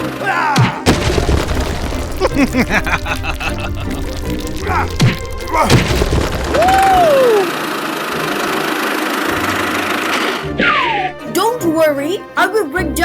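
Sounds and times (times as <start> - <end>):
background music: 0.0 - 13.0
swooping tone: 4.6 - 8.0
falling whistle glides: 6.6 - 7.8.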